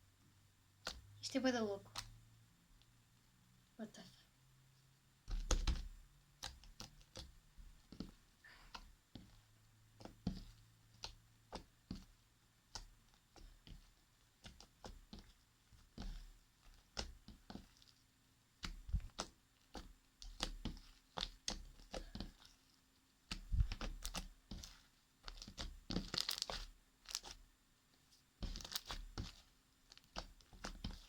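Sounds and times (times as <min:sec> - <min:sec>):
slime crackling and popping: 0:23.3 - 0:27.4, 0:28.4 - 0:31.0.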